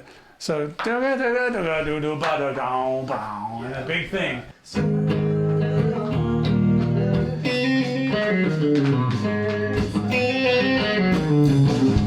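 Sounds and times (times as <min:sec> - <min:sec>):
electric guitar bluesy phrase: 0:04.7 - 0:12.0.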